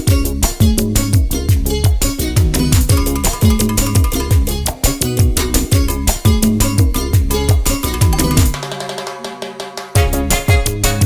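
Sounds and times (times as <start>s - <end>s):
dance music with steady beat: 0.0s - 11.0s.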